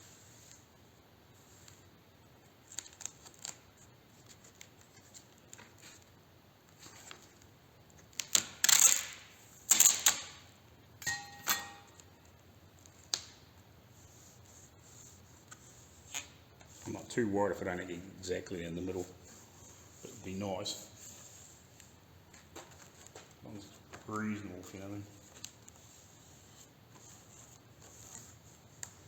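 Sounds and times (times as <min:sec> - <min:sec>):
abrasive tape ripping: 0:08.1 - 0:10.4.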